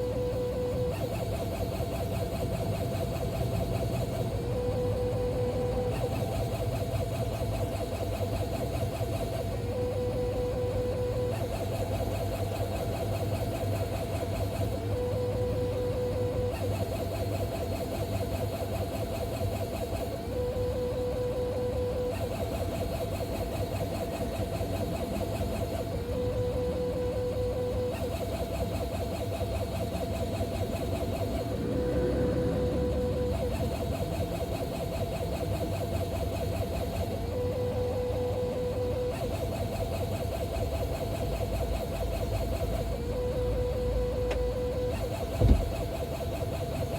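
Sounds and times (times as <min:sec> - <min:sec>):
car whine shifting pitch: 0:31.2 - 0:34.6, 0:43.0 - 0:45.9.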